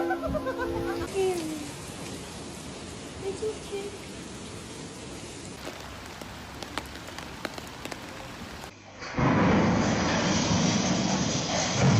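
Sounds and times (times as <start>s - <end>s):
steady rain hiss: 1.0s - 8.8s
single raindrop ticks: 5.6s - 8.7s.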